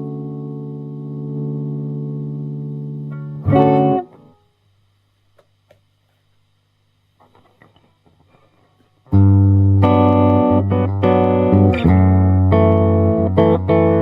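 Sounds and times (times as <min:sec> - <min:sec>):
electric guitar chord ringing: 0:00.0 - 0:04.4, 0:09.1 - 0:14.0
faint amplifier hum: 0:00.0 - 0:14.0.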